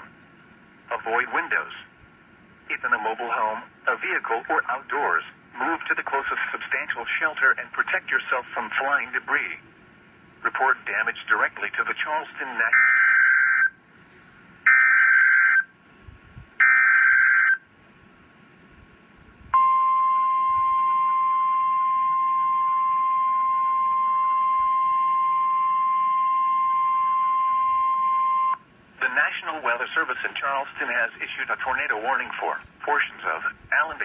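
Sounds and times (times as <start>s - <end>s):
steady warning alarm tone: 10.8s - 13.8s, 14.6s - 15.8s, 16.6s - 17.7s, 19.5s - 28.7s.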